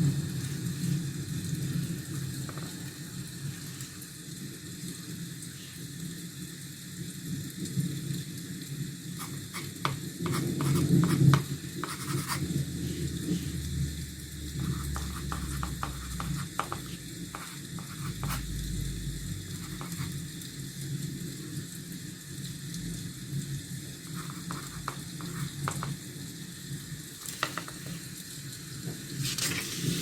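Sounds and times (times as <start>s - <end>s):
low hum and hiss: 0.0s - 30.0s
drawing tool scratching on paper: 9.2s - 13.5s, 14.6s - 18.4s, 19.5s - 20.2s, 24.1s - 26.0s.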